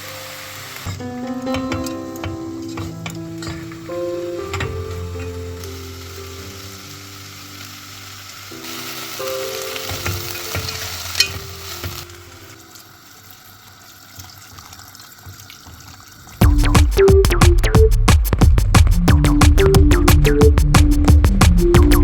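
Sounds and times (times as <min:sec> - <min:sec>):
food sizzling in a pan: 0:00.0 - 0:16.4.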